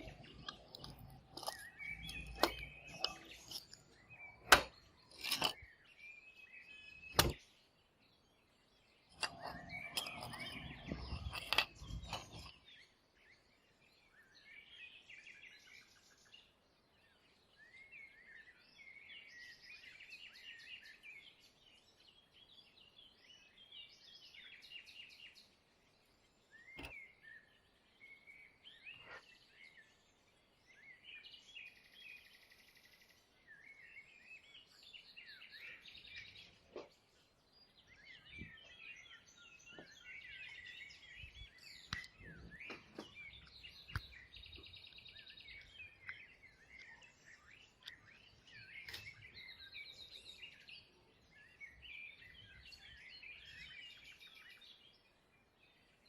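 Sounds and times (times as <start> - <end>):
sharp clicks and knocks: 0.0 - 5.6, 7.1 - 7.4, 9.1 - 12.6
rattling scraping handling noise: 0.0 - 5.7, 9.1 - 12.8
faint birds chirping: 0.0 - 56.0.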